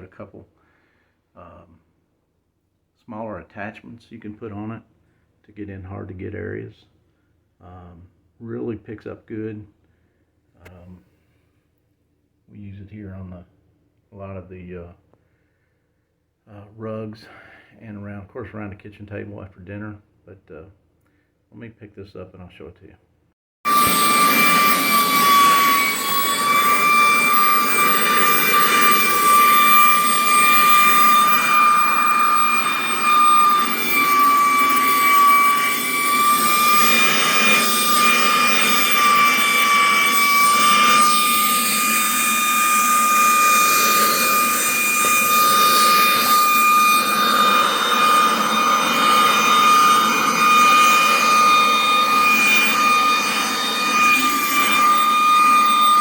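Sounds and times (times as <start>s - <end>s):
cordless vacuum running: 23.7s - 56.0s.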